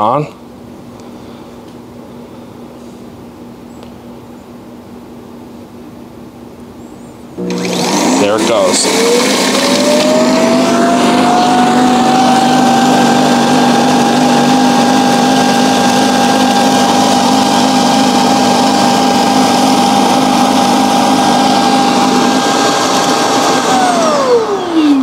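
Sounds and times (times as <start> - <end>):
suction motor whining: 7.4 - 25.0.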